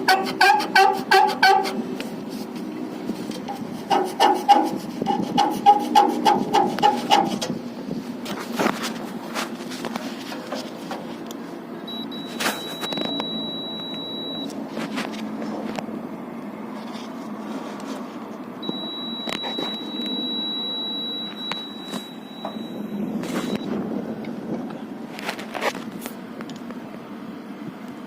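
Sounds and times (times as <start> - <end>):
high continuity beep: 11.9 - 14.5, 18.6 - 23.7
probe handling clicks: 11.9 - 14.6.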